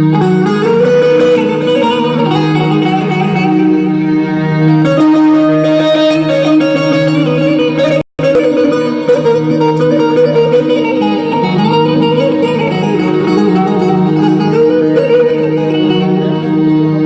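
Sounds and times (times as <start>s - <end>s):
plucked string instruments melody: 0.0s - 17.0s.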